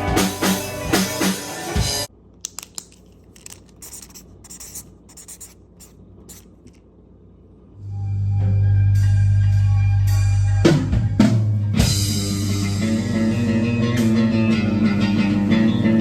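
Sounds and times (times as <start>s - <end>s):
rock band playing: 0.0s - 2.1s, 10.7s - 15.7s.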